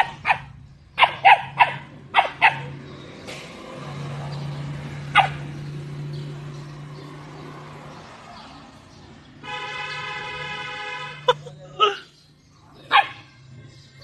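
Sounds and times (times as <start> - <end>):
dog barking: 0.0 - 2.8, 5.1 - 5.5, 12.9 - 13.3.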